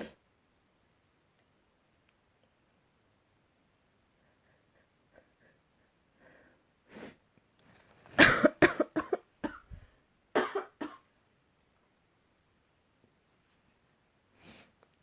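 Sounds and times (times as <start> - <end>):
person sneezing: 8.2 - 9.8.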